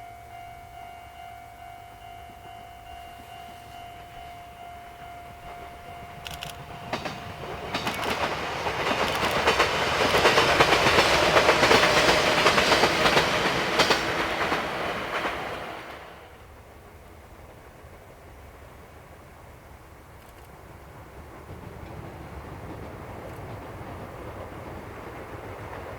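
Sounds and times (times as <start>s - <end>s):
train wheels clattering over joints: 5.4s - 16.8s, 20.2s - 25.9s.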